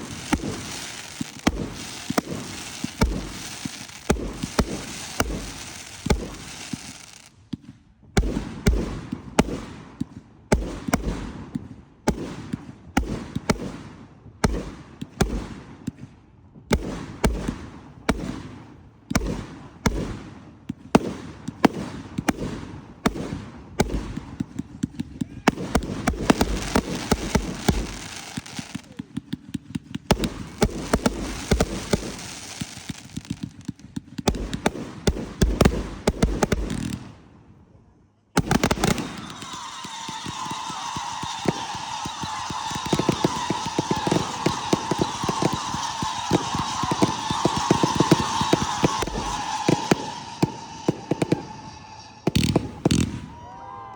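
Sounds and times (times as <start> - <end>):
fireworks crackling: 0.0 - 7.4, 21.0 - 37.1, 38.4 - 53.6
fireworks bangs: 0.0 - 37.4, 38.4 - 53.9.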